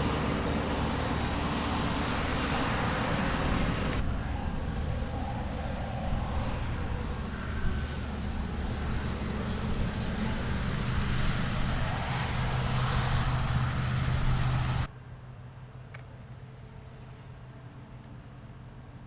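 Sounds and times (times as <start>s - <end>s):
farm machine engine droning: 0.0s - 14.9s.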